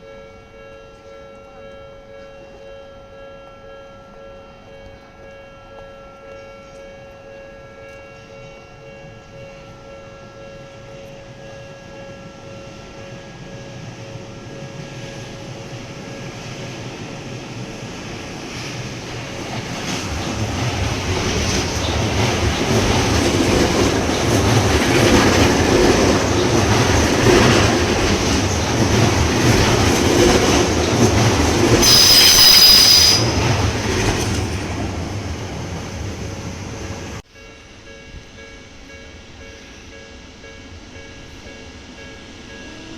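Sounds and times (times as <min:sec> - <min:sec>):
electric train rumble: 0:00.0 - 0:42.9
crossing alarm tones: 0:19.3 - 0:34.0
high wheel squeal: 0:31.8 - 0:33.5.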